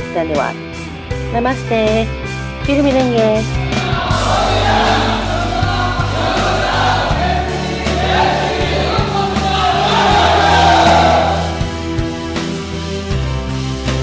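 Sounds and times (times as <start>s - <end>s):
steady bass notes: 1.1s - 14.0s
choir-like voices singing: 3.4s - 12.0s.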